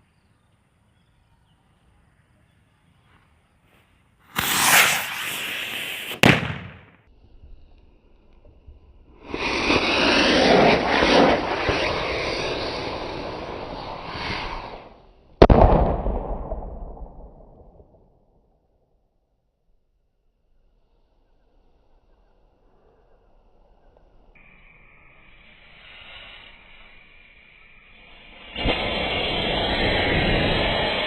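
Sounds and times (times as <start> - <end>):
firework rocket hissing: 4.2 - 7.0, 9.2 - 16.6, 24.4 - 31.0
firework bang: 4.3 - 7.1, 15.4 - 18.4.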